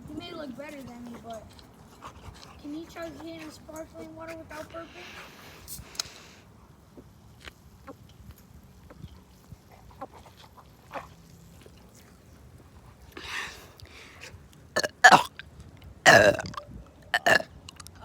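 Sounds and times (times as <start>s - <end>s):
breath: 4.7s - 6.6s, 13.1s - 14.4s
person burping: 14.8s - 15.4s, 16.1s - 17.5s.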